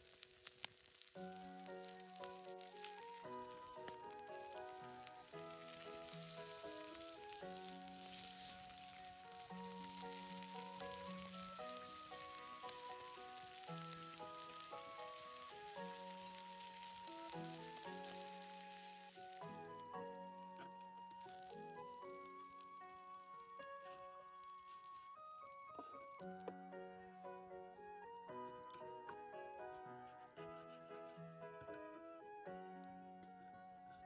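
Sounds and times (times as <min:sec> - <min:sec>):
food sizzling in a pan: 0:00.0 - 0:25.1
background music melody: 0:00.0 - 0:34.0.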